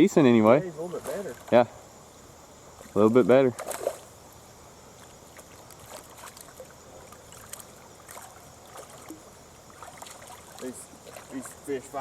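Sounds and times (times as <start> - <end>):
running river water: 0.0 - 12.0
small splashes: 2.8 - 4.2, 5.0 - 11.9.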